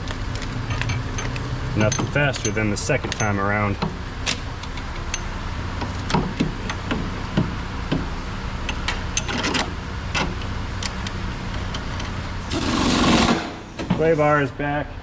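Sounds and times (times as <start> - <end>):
rasping metal scrape: 12.5 - 14.5.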